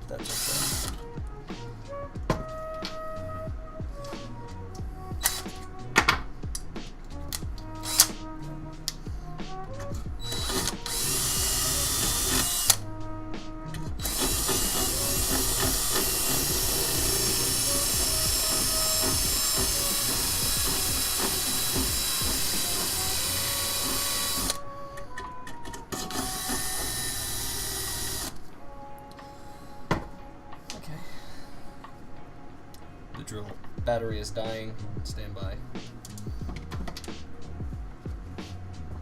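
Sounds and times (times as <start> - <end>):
cordless drill boring: 0.2 - 1.0, 10.2 - 12.8, 14.0 - 24.6, 25.9 - 28.4.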